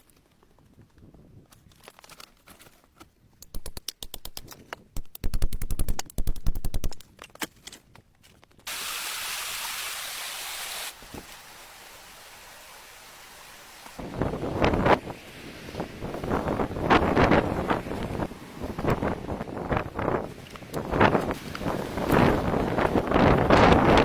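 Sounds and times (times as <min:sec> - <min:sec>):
steady rushing hiss: 0:08.7 - 0:24.0.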